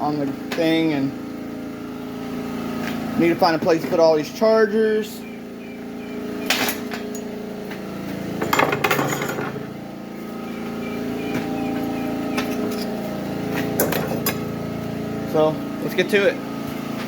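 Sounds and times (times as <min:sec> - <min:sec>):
generator humming: 0:00.0 - 0:17.0
metal tools clattering: 0:06.5 - 0:07.3, 0:08.4 - 0:09.6, 0:11.8 - 0:14.5.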